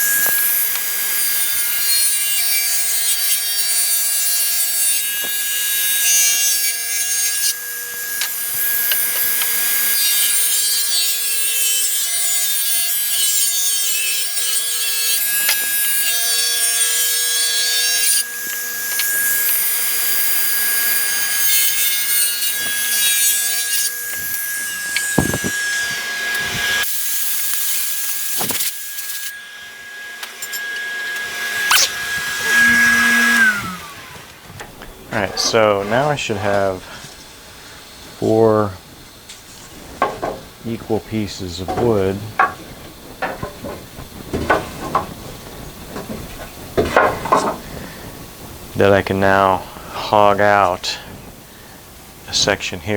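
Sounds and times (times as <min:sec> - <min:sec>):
saw blade cutting wood: 0:00.0 - 0:34.4, 0:35.2 - 0:37.4
table saw motor whine: 0:13.3 - 0:38.2
wood knocking: 0:24.9 - 0:25.7, 0:40.0 - 0:40.5, 0:41.6 - 0:47.6.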